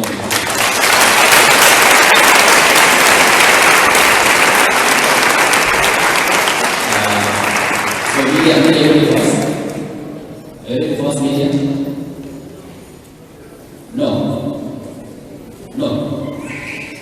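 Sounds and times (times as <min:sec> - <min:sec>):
crowd applauding: 0:00.0 - 0:09.8.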